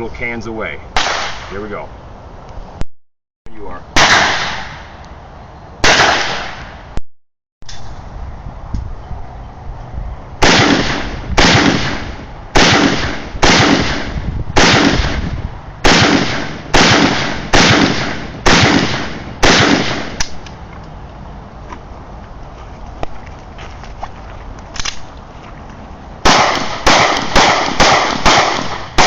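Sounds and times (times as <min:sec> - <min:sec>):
rifle shots echoing: 0:01.0 - 0:01.6, 0:04.0 - 0:04.9, 0:05.8 - 0:06.8, 0:10.4 - 0:20.2, 0:26.2 - 0:29.0.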